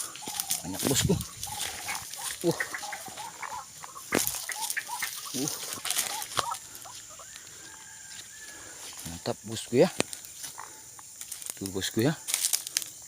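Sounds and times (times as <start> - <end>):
wings flapping: 0.0 - 7.0
bird making low calls: 0.0 - 8.6.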